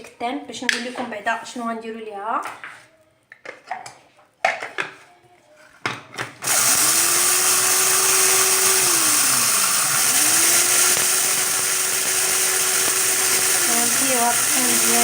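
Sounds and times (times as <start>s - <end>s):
electric grinder motor whining: 6.4s - 15.0s.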